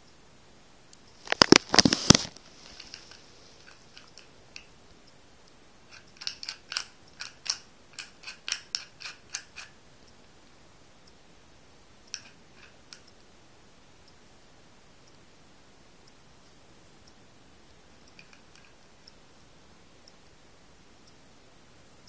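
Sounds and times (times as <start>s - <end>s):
padlock clicking: 5.9s - 9.7s.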